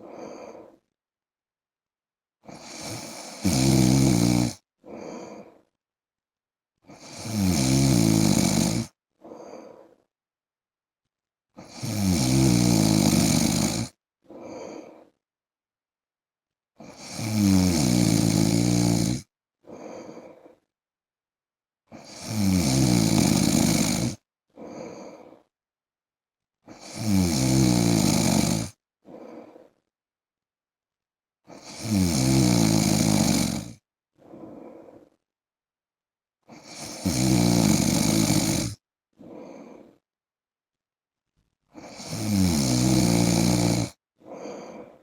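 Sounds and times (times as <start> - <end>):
man snoring loudly: 2.5 - 5.2, 6.9 - 9.0, 11.6 - 14.0, 16.8 - 19.3, 22.0 - 25.0, 26.7 - 28.8, 31.5 - 33.8, 36.5 - 38.8, 41.8 - 44.7.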